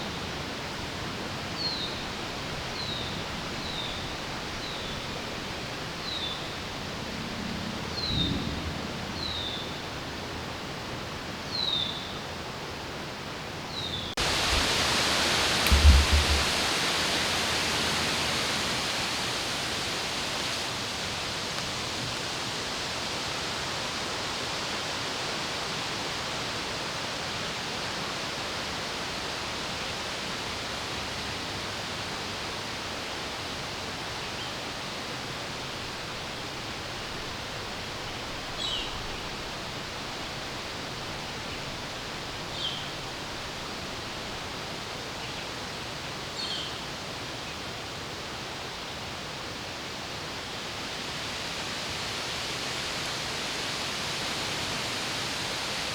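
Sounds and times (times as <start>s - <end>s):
low thumps: 14.2s - 17.2s
wind rushing: 14.2s - 18.7s.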